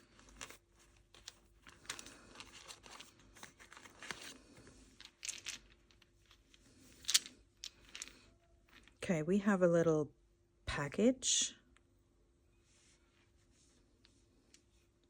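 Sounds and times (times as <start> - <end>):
packaging rustling and crinkling: 0.0 - 9.0.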